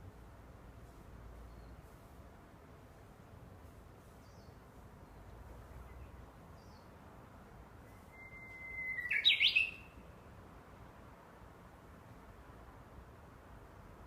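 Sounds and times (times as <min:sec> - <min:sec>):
bird singing whistled song: 0:07.9 - 0:10.0.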